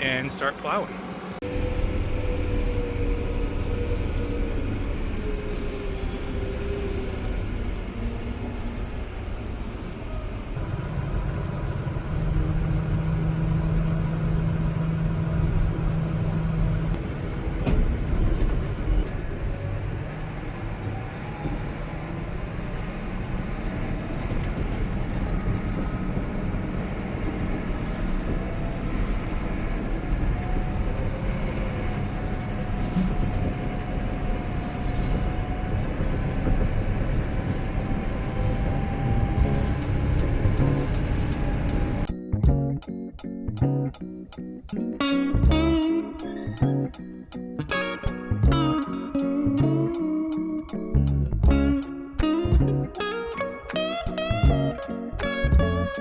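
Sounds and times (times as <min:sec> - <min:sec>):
tractor diesel engine running: 0:00.0 - 0:42.6.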